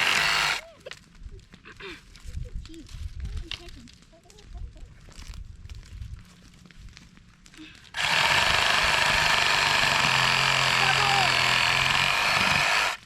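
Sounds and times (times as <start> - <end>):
chainsaw cutting wood: 0.0 - 0.6, 7.9 - 13.0.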